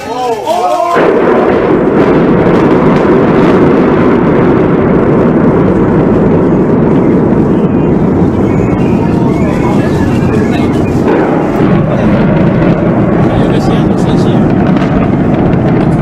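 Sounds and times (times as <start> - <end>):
explosion rumbling roar: 0.6 - 16.0.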